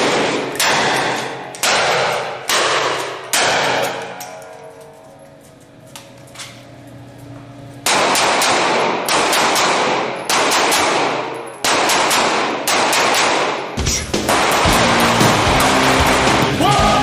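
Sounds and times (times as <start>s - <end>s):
rapid gunfire volleys: 0.0s - 4.2s, 7.8s - 17.0s.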